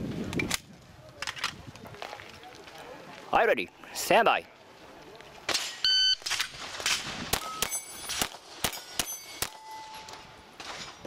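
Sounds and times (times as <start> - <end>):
shot timer beep: 5.8 - 6.2
steel plates ringing: 7.4 - 11.0.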